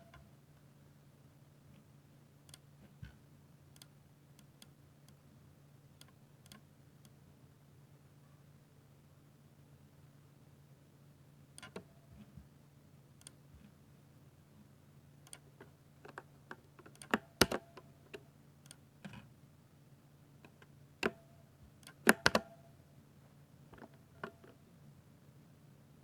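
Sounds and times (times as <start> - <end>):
mechanical keyboard key presses: 21.8 - 22.6.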